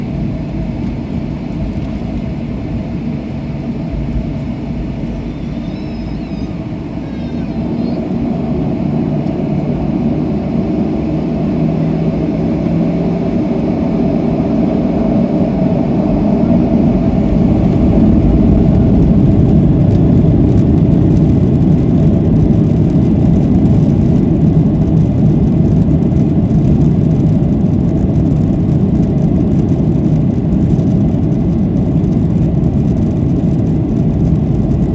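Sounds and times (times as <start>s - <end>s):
jet engines spooling up: 0.7s - 24.4s.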